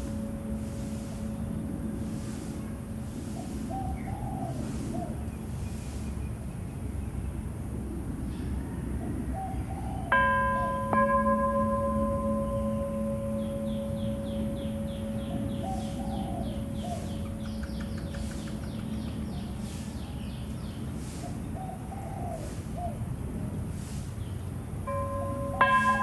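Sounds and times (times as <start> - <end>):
temple bell ringing: 0.0 - 3.0, 10.1 - 18.0, 24.9 - 26.0
bird cooing: 3.3 - 5.2, 13.4 - 19.0, 21.6 - 23.0
small birds chirping: 12.7 - 24.5.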